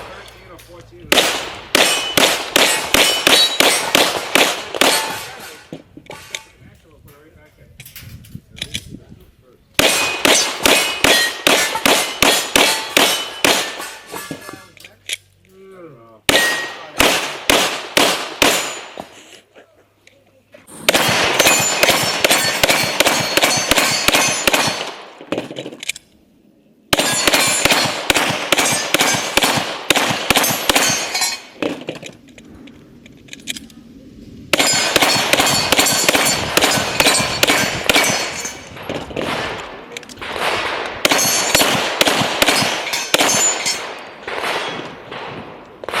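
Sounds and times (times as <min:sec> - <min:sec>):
pistol shots: 0:01.0 - 0:05.6, 0:09.8 - 0:14.3, 0:16.3 - 0:19.1, 0:20.8 - 0:25.8, 0:26.9 - 0:32.0, 0:34.5 - 0:46.0
bullets ringing on steel plates: 0:01.8 - 0:04.0, 0:09.8 - 0:14.5, 0:16.3 - 0:16.9, 0:21.3 - 0:24.8, 0:27.0 - 0:29.6, 0:30.3 - 0:31.6, 0:34.6 - 0:38.8, 0:41.0 - 0:44.0.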